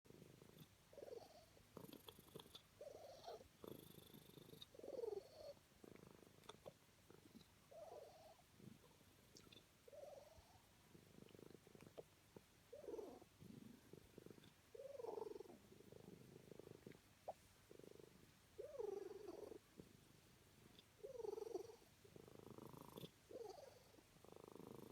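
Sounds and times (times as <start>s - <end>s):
pet snoring: 0.1s - 6.5s, 12.7s - 17.0s, 21.0s - 24.9s.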